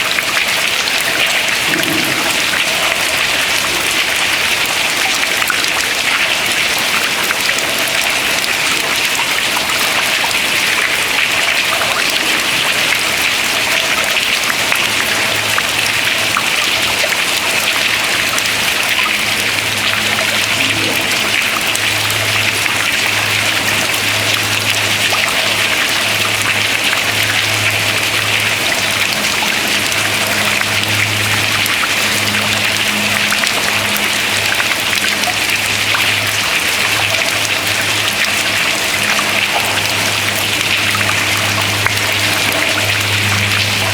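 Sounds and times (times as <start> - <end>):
water dripping into water: 0.0 - 43.9
low steady hum: 1.2 - 5.1.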